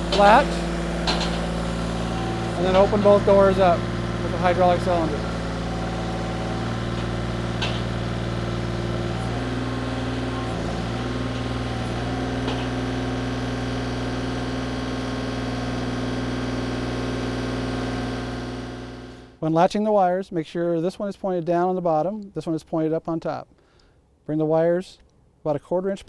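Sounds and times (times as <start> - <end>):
diesel engine running: 0.0 - 19.4.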